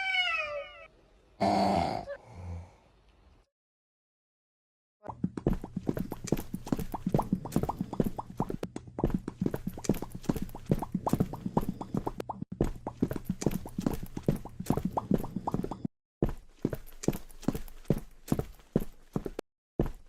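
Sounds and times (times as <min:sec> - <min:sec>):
clip-clop knocks: 0:05.1 - 0:15.8.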